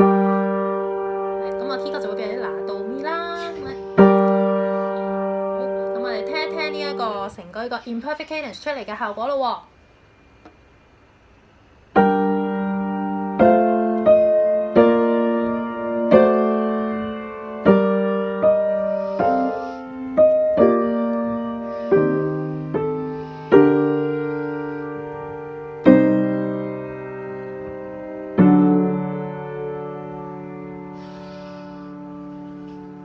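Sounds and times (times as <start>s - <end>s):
piano melody and chords: 0.0s - 7.3s, 11.9s - 33.0s.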